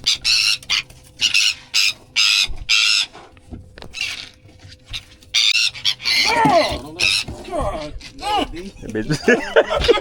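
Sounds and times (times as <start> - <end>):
bird squawking harshly: 0.0 - 3.1, 5.3 - 7.5.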